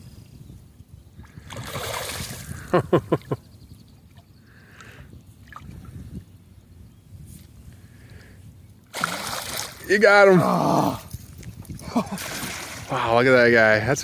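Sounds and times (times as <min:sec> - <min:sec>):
fish splashing in water: 0:08.9 - 0:09.8.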